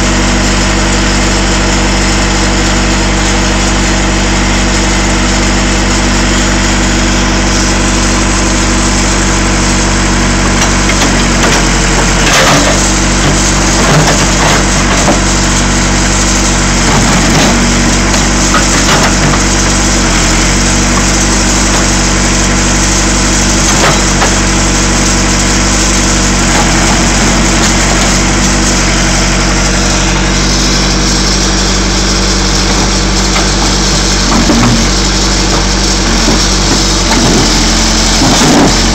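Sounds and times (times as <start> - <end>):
diesel engine running: 0.0 - 38.9
metal cracking and crunching: 9.8 - 38.9.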